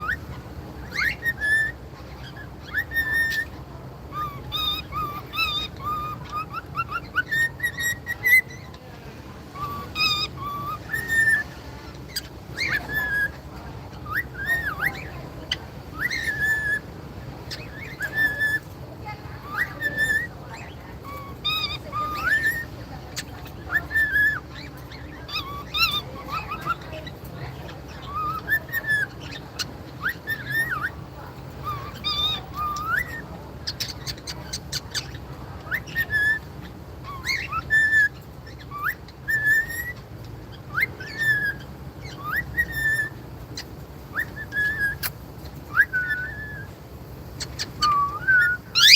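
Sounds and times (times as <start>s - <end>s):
cockatiel whistling: 0.0s - 8.8s, 9.6s - 13.4s, 14.0s - 16.9s, 17.5s - 18.7s, 19.4s - 27.0s, 27.9s - 46.7s, 47.4s - 48.9s
sharp bird chirps: 47.4s - 48.9s.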